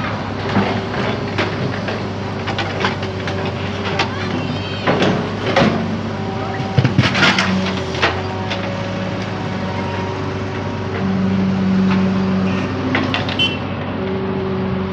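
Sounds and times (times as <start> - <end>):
diesel engine running: 0.0 - 14.9
metal knocks and clanks: 0.5 - 8.7.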